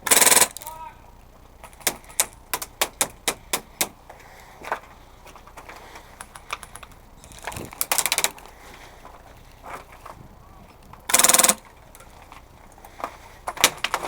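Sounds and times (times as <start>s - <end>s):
airsoft gun full-auto burst: 0.0s - 0.6s, 11.1s - 11.6s.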